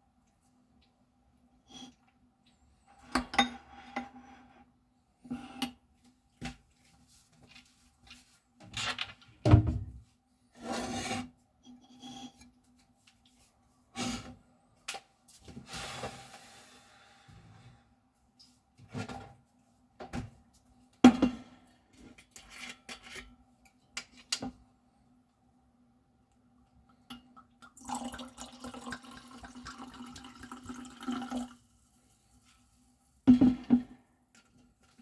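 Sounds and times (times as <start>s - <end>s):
water running: 27.7s - 32.8s
dishes knocking and clinking: 33.3s - 34.0s.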